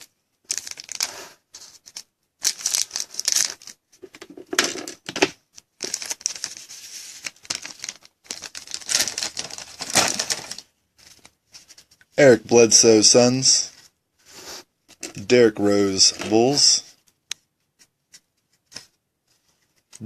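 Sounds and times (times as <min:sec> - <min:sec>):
foil wrapper crinkling and tearing: 0:00.0 - 0:01.2, 0:01.8 - 0:03.8, 0:05.8 - 0:11.3.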